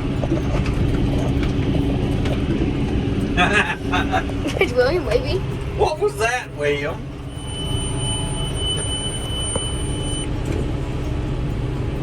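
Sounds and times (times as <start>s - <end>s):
tractor engine running: 0.0s - 12.0s
high-pitched electronic alert tone: 7.3s - 10.3s.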